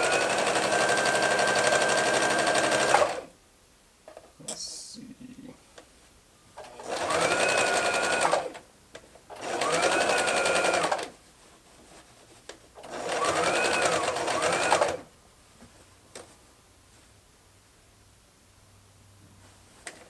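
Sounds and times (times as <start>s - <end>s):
sewing machine stitching: 0.0s - 3.3s, 6.6s - 8.6s, 9.3s - 11.1s, 12.8s - 15.0s.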